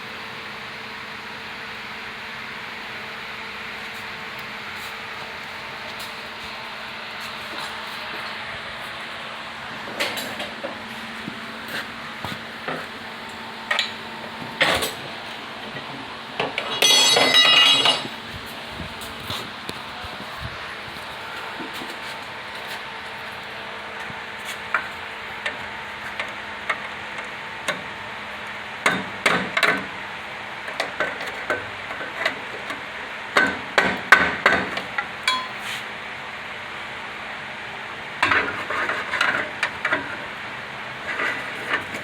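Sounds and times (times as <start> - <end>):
hand tools clinking on metal: 16.5 - 18.2, 35.3 - 35.7.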